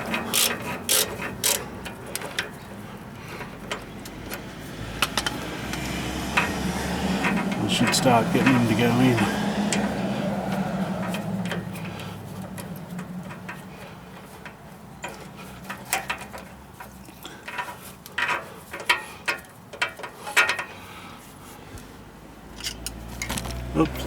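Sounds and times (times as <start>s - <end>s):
metallic clicks of hand tools: 0.0s - 2.5s, 3.4s - 6.6s, 22.5s - 24.0s.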